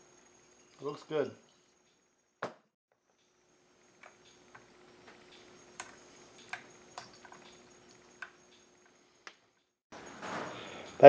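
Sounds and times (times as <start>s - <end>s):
faint steady hum: 3.0s - 11.0s
light metallic clicks and ticks: 4.0s - 9.4s.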